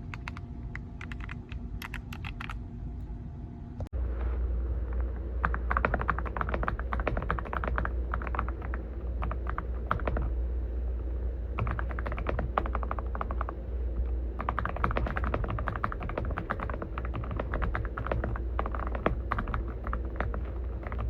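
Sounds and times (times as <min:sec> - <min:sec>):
mechanical keyboard typing: 0:00.0 - 0:02.6, 0:05.4 - 0:10.3, 0:11.6 - 0:13.6, 0:14.4 - 0:21.0
steady low hum: 0:00.0 - 0:21.0.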